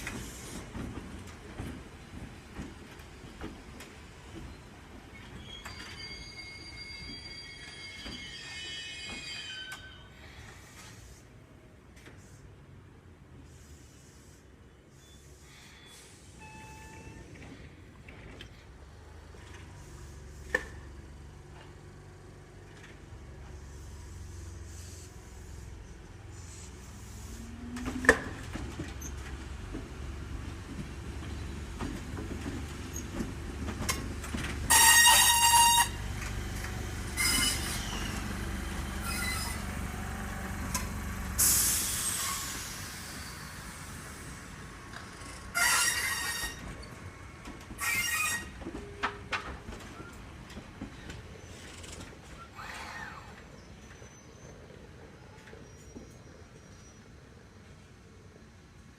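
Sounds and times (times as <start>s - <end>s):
train rumbling: 0.0s - 14.6s, 16.0s - 58.9s
train wheels squealing: 3.7s - 11.2s, 14.9s - 17.6s, 34.7s - 36.1s, 37.0s - 39.9s, 41.4s - 47.1s, 47.7s - 49.2s, 50.8s - 57.6s.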